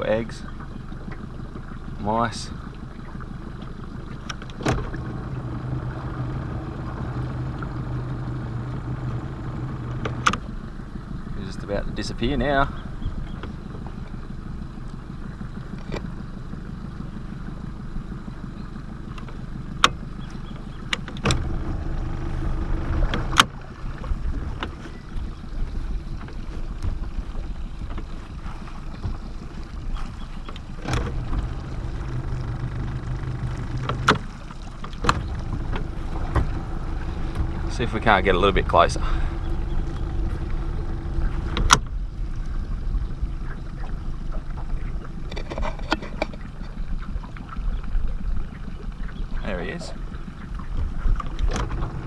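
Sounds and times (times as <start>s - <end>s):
boat motor hum: 0.0s - 52.0s
low steady rumble: 0.0s - 52.0s
sharp clicks and knocks: 9.9s - 10.5s, 30.5s - 36.6s, 41.3s - 41.9s.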